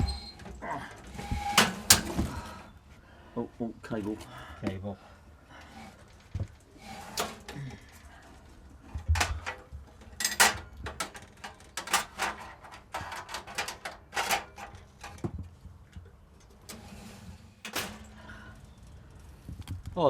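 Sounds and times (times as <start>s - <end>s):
metal clicks knocks and scrapes: 0.0s - 2.2s, 6.9s - 7.6s, 8.9s - 18.3s.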